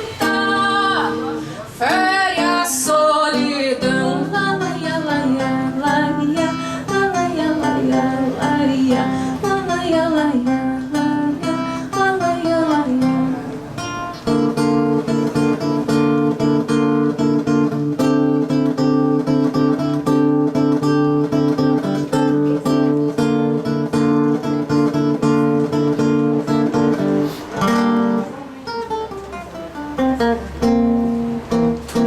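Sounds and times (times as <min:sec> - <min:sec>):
acoustic guitar strumming: 0:00.0 - 0:32.0.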